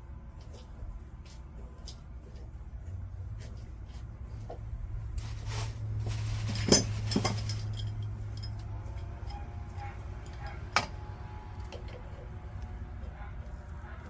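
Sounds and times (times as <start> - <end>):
steady low hum: 0.0 - 14.0
scraping rustle: 3.3 - 7.9
pipe fittings clinking: 6.2 - 12.3.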